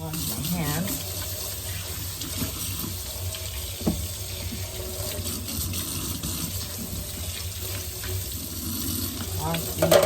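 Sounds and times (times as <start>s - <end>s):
tap running into sink: 2.2s - 10.0s.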